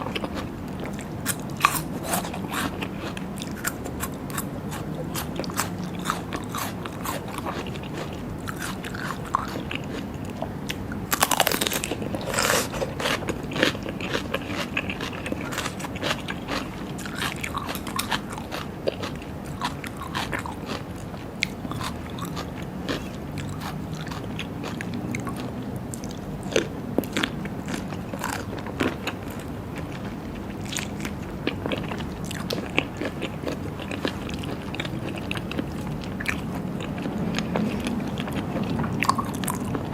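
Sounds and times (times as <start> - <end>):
chewing and biting: 0.0 - 39.9
crunching: 10.7 - 25.4.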